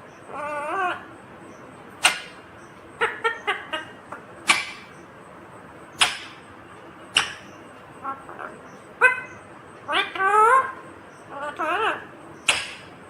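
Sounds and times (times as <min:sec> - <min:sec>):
parrot squawking: 0:00.3 - 0:01.1, 0:03.0 - 0:05.0, 0:07.2 - 0:12.9
parrot chattering notes: 0:07.1 - 0:12.9.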